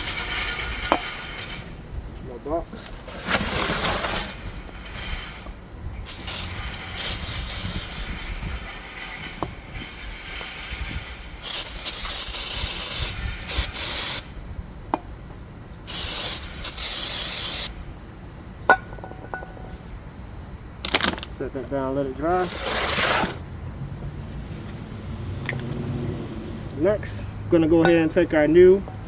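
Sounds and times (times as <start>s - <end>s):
aerosol can spraying: 0.0s - 1.1s, 6.1s - 8.3s, 11.4s - 14.3s, 15.9s - 17.8s.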